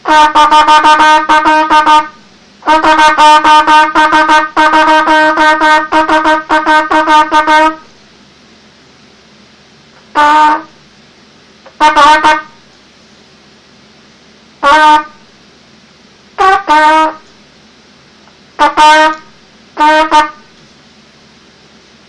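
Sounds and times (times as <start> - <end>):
trumpet blasts: 0.0 - 8.0, 10.1 - 10.8, 11.8 - 12.7, 14.6 - 15.4, 16.4 - 17.4, 18.6 - 20.6.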